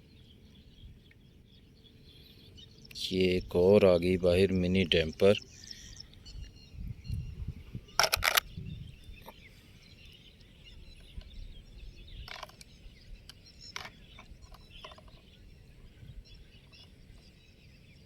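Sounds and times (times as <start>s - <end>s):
faint birds chirping: 0.0s - 18.0s
sharp clicks: 8.0s - 8.5s.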